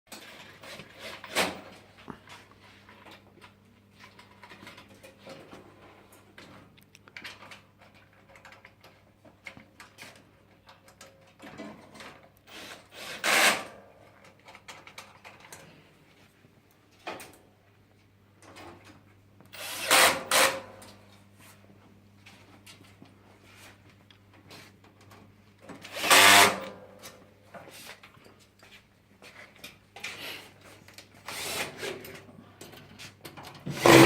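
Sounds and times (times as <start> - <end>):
clicks and knocks of parts handled: 14.1 - 15.8.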